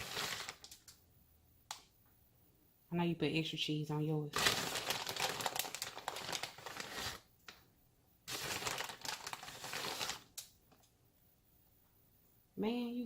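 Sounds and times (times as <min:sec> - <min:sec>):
plastic bag crinkling: 0:00.0 - 0:00.9, 0:04.3 - 0:07.6, 0:08.3 - 0:10.8.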